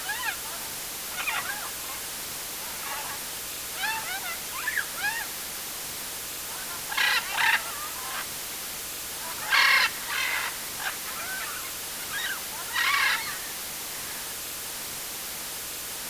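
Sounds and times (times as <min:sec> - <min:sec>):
steady hiss: 0:00.0 - 0:16.0
bird harsh calls: 0:06.6 - 0:08.3, 0:09.2 - 0:13.7
faint bird chirps: 0:09.2 - 0:14.3.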